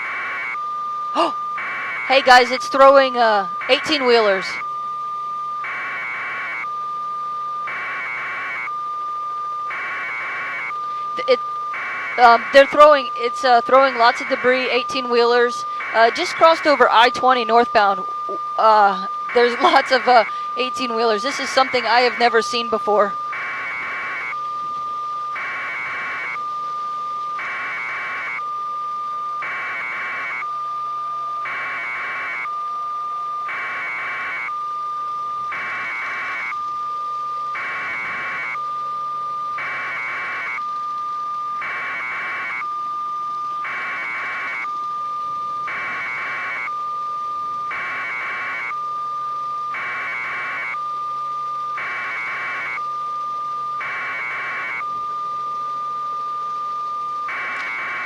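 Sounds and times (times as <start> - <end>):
high steady alert tone: 0.0 - 28.4
harsh beeping bursts: 0.0 - 58.0.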